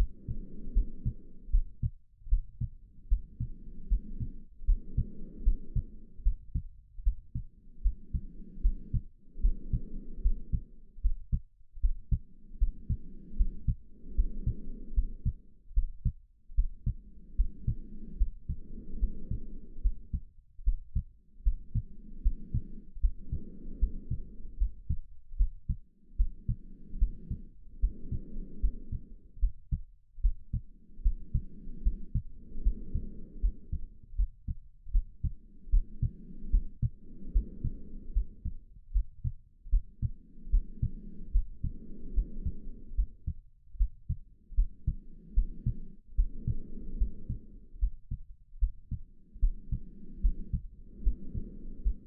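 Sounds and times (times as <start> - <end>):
heartbeat thumping: 0.0 - 52.0
slow breathing: 0.0 - 52.0.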